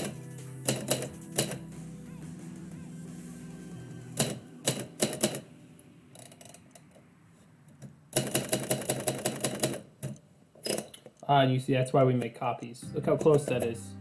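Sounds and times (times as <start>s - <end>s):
typewriter keys striking: 0.0s - 1.6s, 4.2s - 5.4s, 8.2s - 10.2s.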